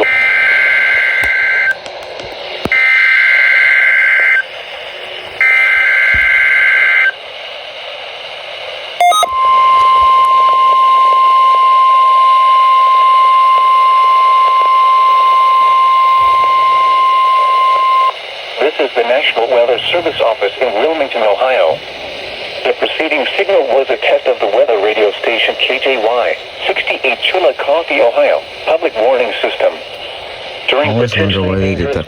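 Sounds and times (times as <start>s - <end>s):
steady warning alarm tone: 5.4s - 7.2s, 9.0s - 31.2s
warbling two-tone data bursts: 9.0s - 21.8s.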